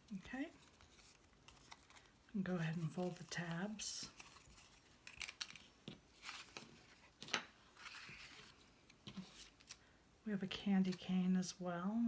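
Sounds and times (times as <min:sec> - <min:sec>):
paper rustling: 0:00.4 - 0:09.8
paper folding clicks: 0:03.4 - 0:09.8.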